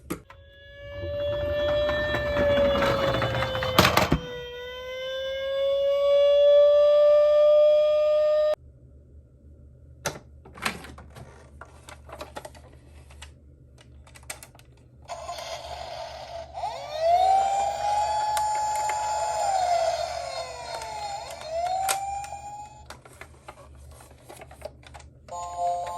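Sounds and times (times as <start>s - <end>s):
siren wailing: 0.3s - 8.6s, 15.8s - 23.0s
toy cars clicking and tapping: 14.2s - 23.5s.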